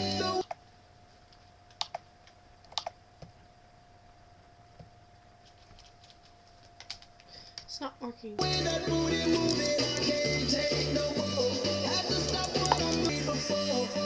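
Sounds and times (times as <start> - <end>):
faint steady tone: 0.0 - 8.2
sharp clicks and taps: 1.7 - 3.4, 12.2 - 13.2.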